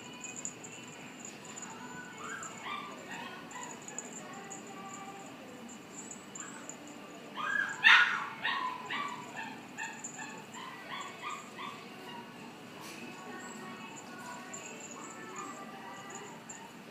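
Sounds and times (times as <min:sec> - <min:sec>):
dog yipping: 0:01.6 - 0:05.2, 0:06.0 - 0:12.4, 0:13.3 - 0:16.8.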